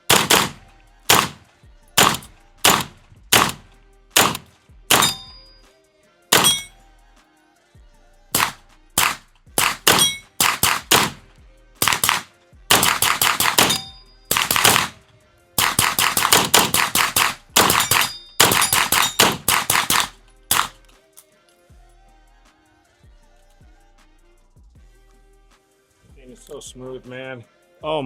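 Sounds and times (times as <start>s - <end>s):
gunshots in rapid strings: 0.0s - 5.4s, 6.3s - 6.7s, 8.4s - 15.0s, 15.6s - 20.8s.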